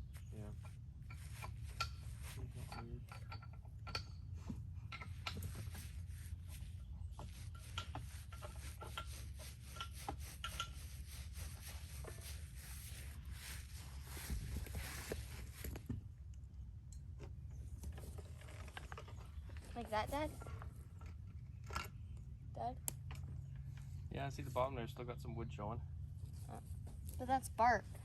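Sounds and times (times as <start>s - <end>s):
paintbrush scrubbing on wood: 5.6s - 15.5s.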